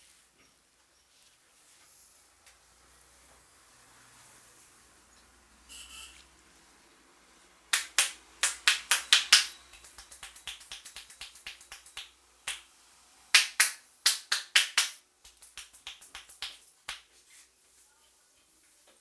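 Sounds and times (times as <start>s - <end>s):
light fast hand taps: 7.8s - 12.6s, 13.4s - 17.0s
hands slapping on head: 7.8s - 12.7s, 13.4s - 17.1s.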